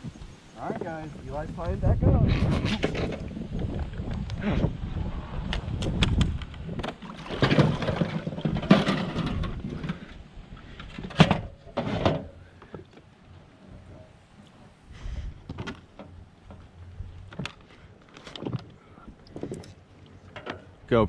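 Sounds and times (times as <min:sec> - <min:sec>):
wind buffeting microphone: 0:00.0 - 0:11.6
knocks and thumps on a boat: 0:06.0 - 0:10.1.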